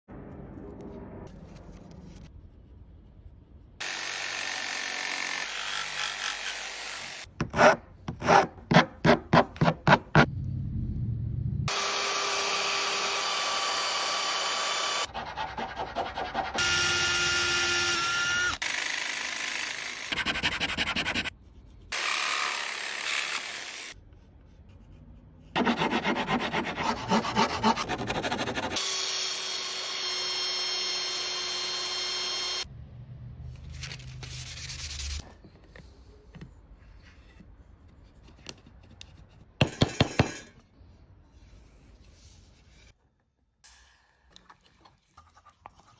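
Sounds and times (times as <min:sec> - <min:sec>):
wood being sanded and sawn: 0:11.8 - 0:18.5, 0:19.9 - 0:21.3, 0:25.6 - 0:32.6
power tools whining: 0:16.6 - 0:20.1, 0:28.8 - 0:32.6.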